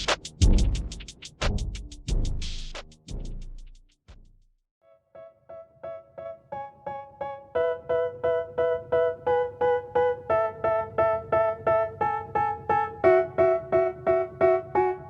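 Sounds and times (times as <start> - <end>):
electric piano repeated chords: 5.2 - 15.0.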